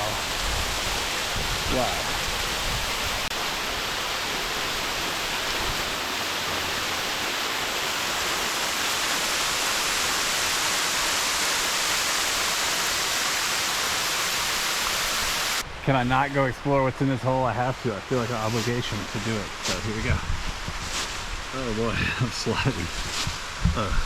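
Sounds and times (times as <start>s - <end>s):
waterfall rushing: 0.0s - 15.6s.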